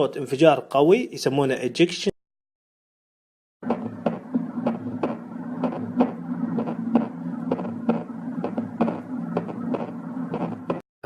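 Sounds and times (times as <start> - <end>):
continuous low hum: 3.6 - 10.8
heart ejection clicks: 3.6 - 10.8.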